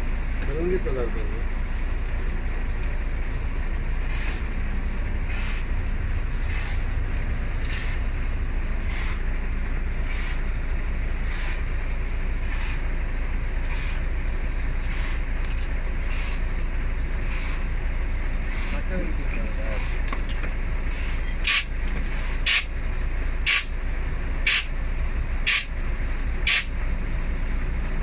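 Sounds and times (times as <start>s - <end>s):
bus diesel engine idling: 0.0s - 28.0s
short air hisses: 13.6s - 14.0s, 17.2s - 17.6s, 20.9s - 22.7s, 23.5s - 23.7s, 24.5s - 24.7s, 25.5s - 25.7s, 26.5s - 26.7s.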